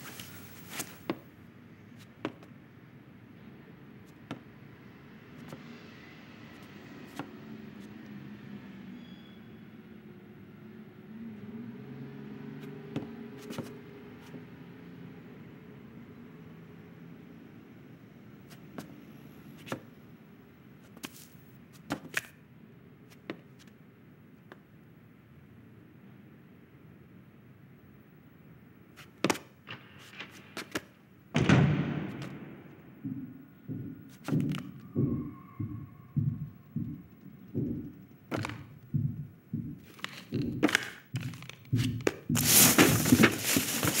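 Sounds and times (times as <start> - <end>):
dull thumps: 31.4 - 44.0
low steady hum: 32.3 - 43.9.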